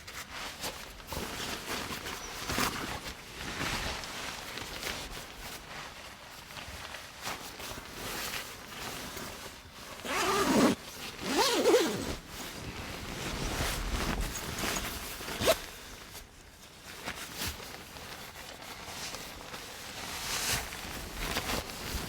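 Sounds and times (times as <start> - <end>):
zipper rasping: 10.0 - 12.3, 14.3 - 15.6.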